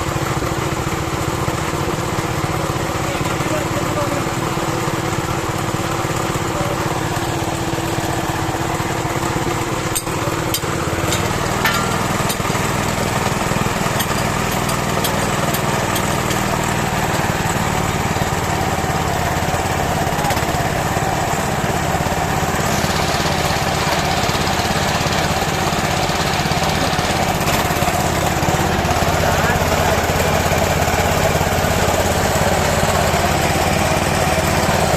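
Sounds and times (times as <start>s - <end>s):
small pump engine running: 0.0s - 34.9s
sharp metallic clicks: 9.9s - 17.6s.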